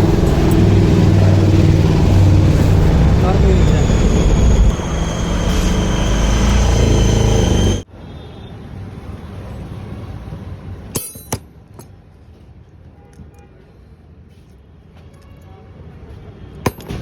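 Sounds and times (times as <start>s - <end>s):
high whine: 0.0s - 7.8s
vehicle engine running: 0.0s - 7.8s.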